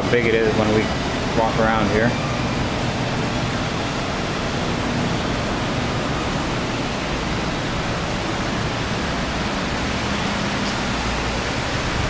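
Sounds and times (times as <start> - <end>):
ventilation fan rushing: 0.0 - 12.0.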